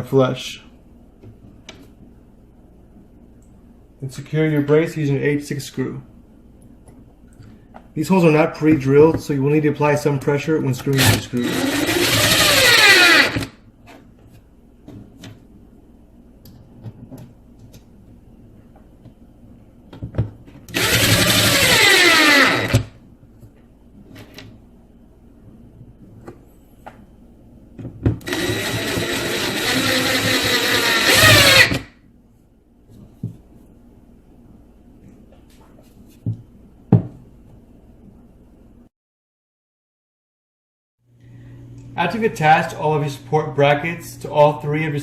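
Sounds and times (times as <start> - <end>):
power drill driving screws: 11.0 - 13.5, 20.7 - 22.9, 28.2 - 31.9.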